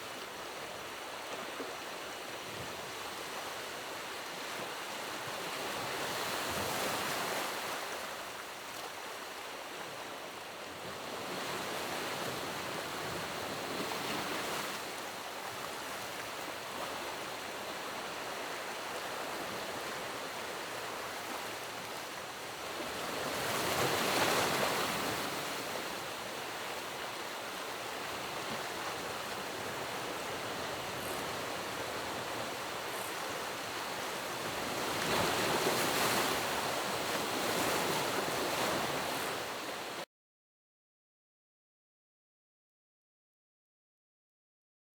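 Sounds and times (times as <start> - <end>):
rushing water: 14.8 - 40.0.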